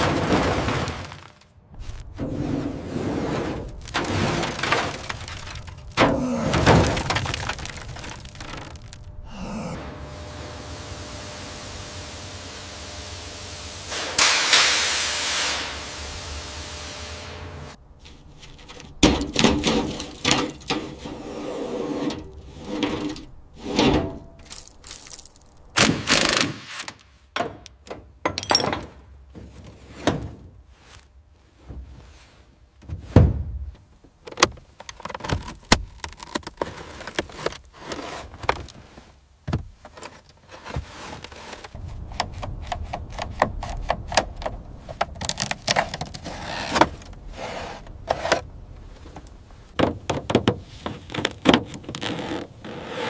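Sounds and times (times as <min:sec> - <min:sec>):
hiss: 0:09.4 - 0:17.4
tools and parts knocking: 0:27.4 - 0:29.0.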